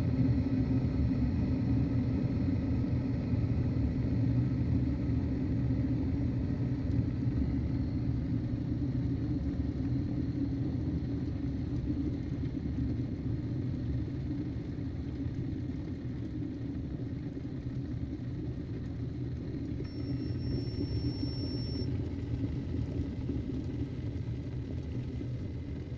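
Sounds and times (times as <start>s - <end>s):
low mechanical rumble: 0.2s - 25.9s
thin high-pitched tone: 19.9s - 21.8s.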